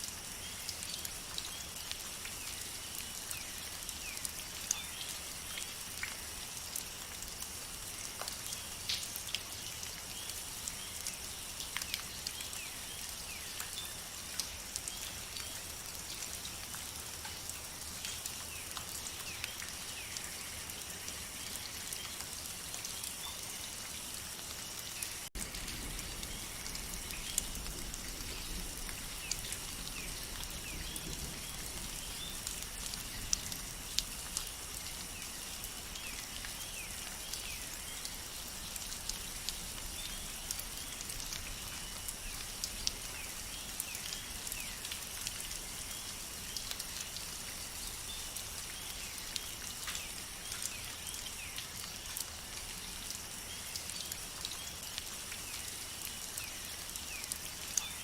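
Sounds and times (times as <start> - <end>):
steady rain on forest: 0.0 - 58.0
raindrops ticking: 25.2 - 58.0.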